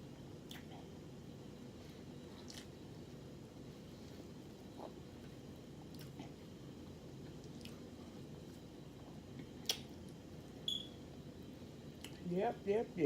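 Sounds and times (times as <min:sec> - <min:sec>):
wet mouth clicks: 0:00.5 - 0:00.7, 0:09.6 - 0:09.9
chewing food: 0:02.3 - 0:02.8, 0:04.6 - 0:06.4, 0:07.2 - 0:10.2.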